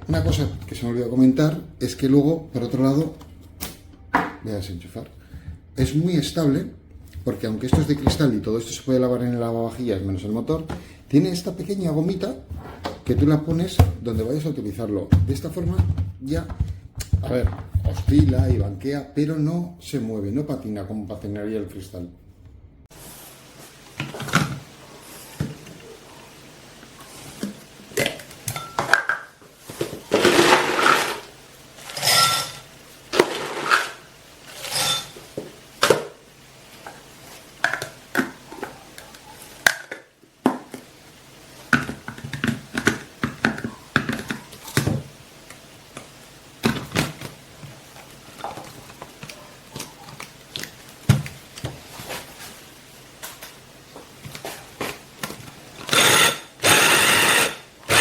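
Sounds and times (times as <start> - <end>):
food chopper parts clattering: 30.1 - 35.1, 55.8 - 58.0
food chopper motor running: 55.8 - 58.0.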